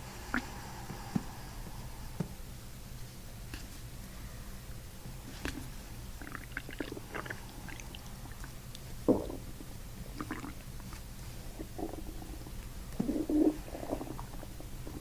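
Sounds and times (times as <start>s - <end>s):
stomach gurgling: 5.4s - 15.0s.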